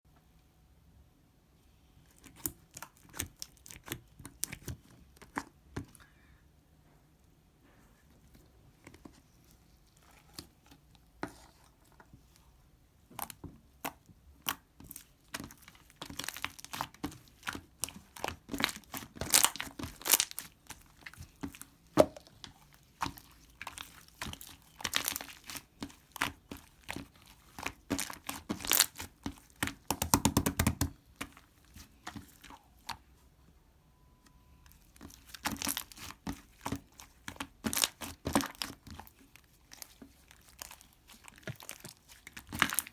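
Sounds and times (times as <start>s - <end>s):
crinkling and crackling: 13.1s - 29.9s, 34.6s - 42.9s.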